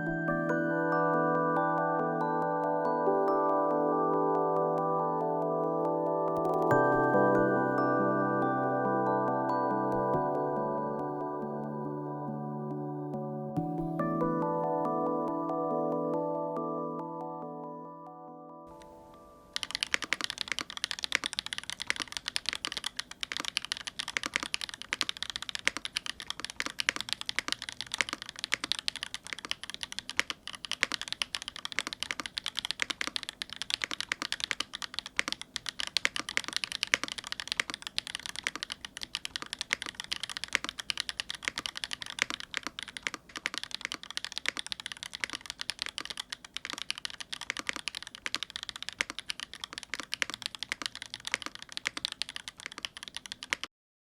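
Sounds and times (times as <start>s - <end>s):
mechanical keyboard typing: 6.3s - 6.9s, 19.6s - 53.7s.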